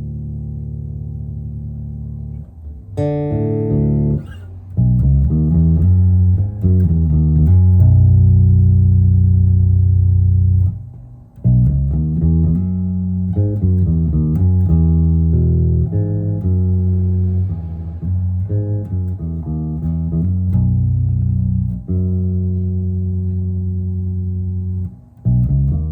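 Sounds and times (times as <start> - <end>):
electric bass notes: 0.0 - 25.9.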